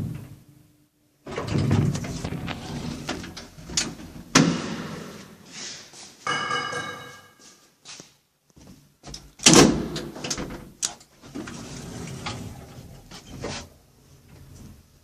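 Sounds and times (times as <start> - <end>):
lift doors sliding and shutting: 1.2 - 4.8, 9.2 - 14.9.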